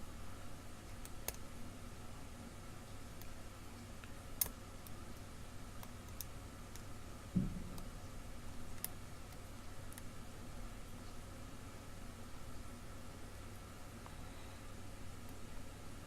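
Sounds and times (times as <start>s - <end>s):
soft low thump: 7.4s - 7.8s.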